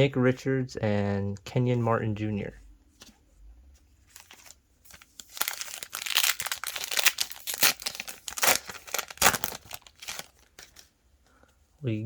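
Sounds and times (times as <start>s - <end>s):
plastic wrapper crinkling and tearing: 4.1s - 10.9s.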